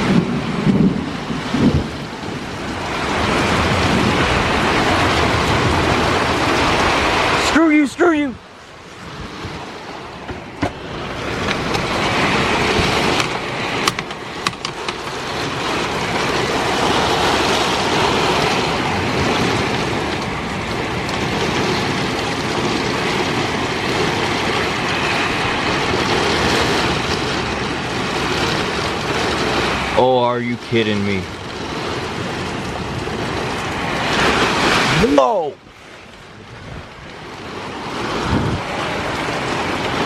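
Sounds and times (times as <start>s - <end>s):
rain rushing: 0.0s - 40.0s
wind: 0.0s - 40.0s
sharp knocks: 13.8s - 15.0s.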